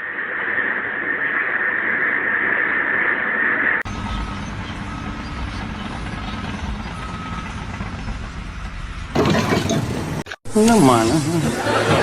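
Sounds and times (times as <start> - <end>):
engine idling low rumble: 3.8 - 10.2.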